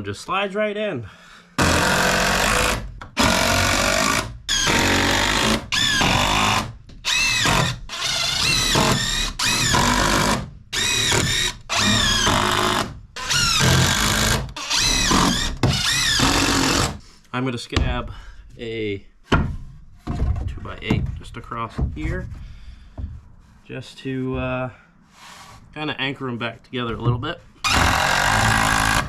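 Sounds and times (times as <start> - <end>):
power drill bursts: 1.6 - 17.0, 27.6 - 29.0.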